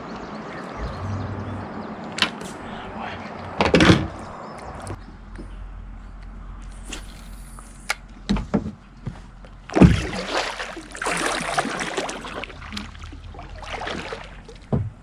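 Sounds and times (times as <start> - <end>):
water splashing and sloshing: 0.2 - 5.3, 6.8 - 15.0
heavy thump: 0.8 - 2.8.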